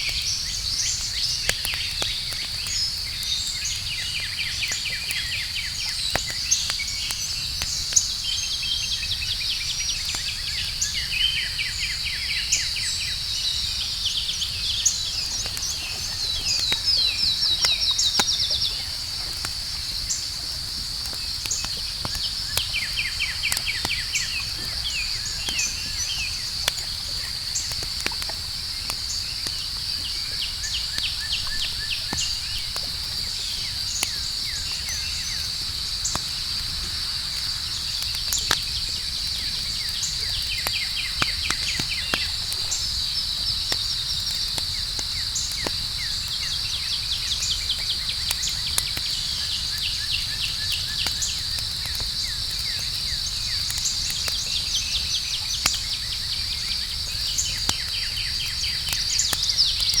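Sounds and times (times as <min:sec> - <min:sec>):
campfire crackling and popping: 0:00.0 - 1:00.0
crickets chirping: 0:00.0 - 1:00.0.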